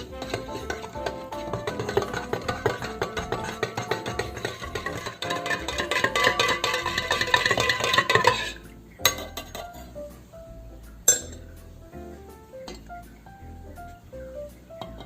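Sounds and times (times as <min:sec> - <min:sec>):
background music with busy beat: 0:00.0 - 0:09.3
sharp clinks: 0:11.1 - 0:11.4.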